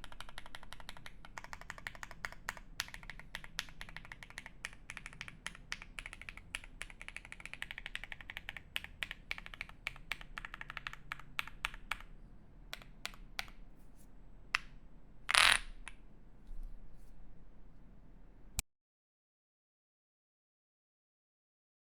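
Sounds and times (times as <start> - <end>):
mechanical keyboard typing: 0.0 - 12.1.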